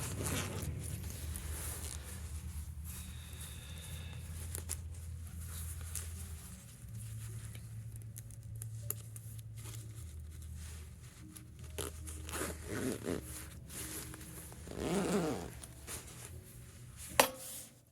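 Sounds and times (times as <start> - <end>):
zipper zipping: 0.0 - 2.0, 11.7 - 16.1.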